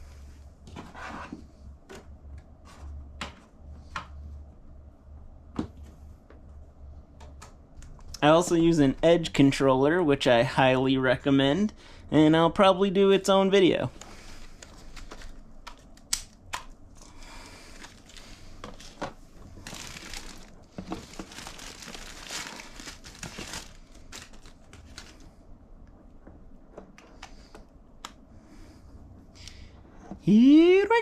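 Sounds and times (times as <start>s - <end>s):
crinkling handling noise: 13.9s - 27.7s.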